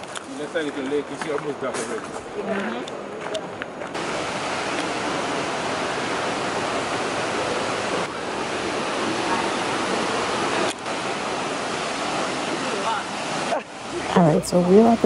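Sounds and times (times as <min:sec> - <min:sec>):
waterfall rushing: 0:04.0 - 0:15.0.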